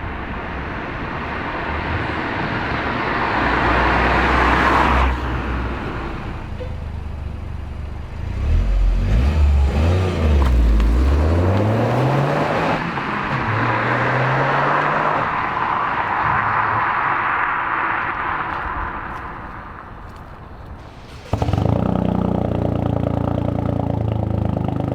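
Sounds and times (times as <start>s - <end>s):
car engine accelerating: 7.5s - 19.8s.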